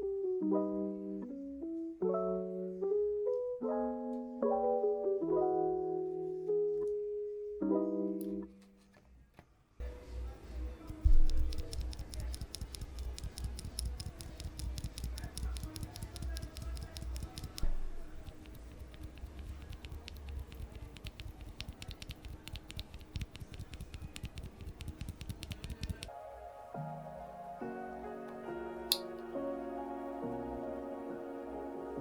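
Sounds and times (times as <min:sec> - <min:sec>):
background music: 0:00.0 - 0:08.9, 0:09.8 - 0:20.5, 0:25.6 - 0:32.0
mechanical keyboard clicking: 0:10.8 - 0:26.1.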